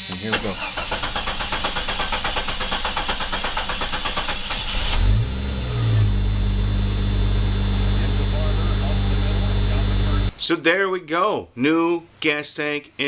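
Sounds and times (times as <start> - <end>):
engine cranking on starter: 0.0 - 10.3
engine revving and idling: 0.4 - 10.3.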